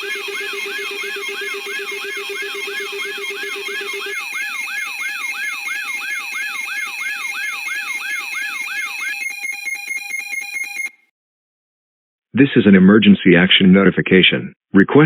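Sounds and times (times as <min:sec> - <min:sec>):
steady high beeps: 0:00.0 - 0:10.9
falling whoop alarm: 0:00.0 - 0:11.0
rapid pulsing beep: 0:00.0 - 0:11.0.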